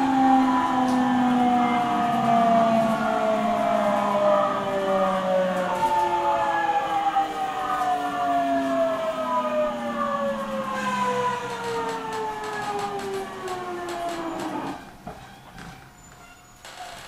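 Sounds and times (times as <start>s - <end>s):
electric train motor whine: 8.6s - 15.0s.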